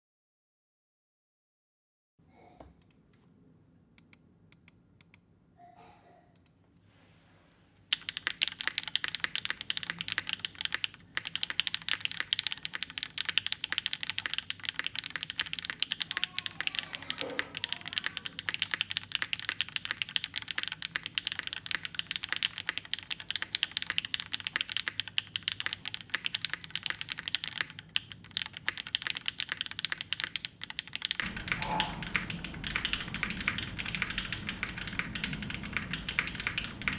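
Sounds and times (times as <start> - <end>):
mechanical keyboard typing: 7.9 - 36.9.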